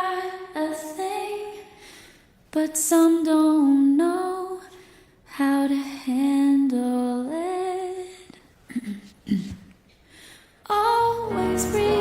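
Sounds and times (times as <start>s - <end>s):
woman singing wordless notes: 10.7s - 12.0s.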